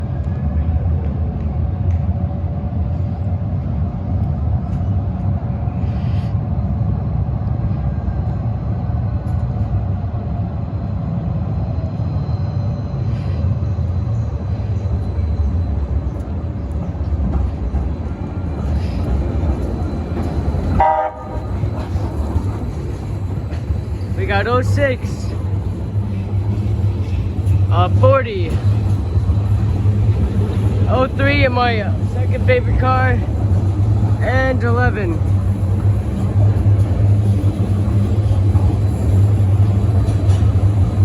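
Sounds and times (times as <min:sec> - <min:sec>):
light rail train rumbling: 0:00.0 - 0:41.0
train horn honk: 0:20.8 - 0:21.4.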